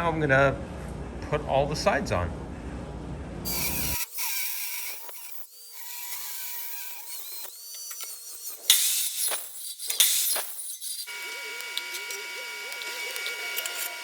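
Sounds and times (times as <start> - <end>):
metalworking noise: 3.5 - 14.0.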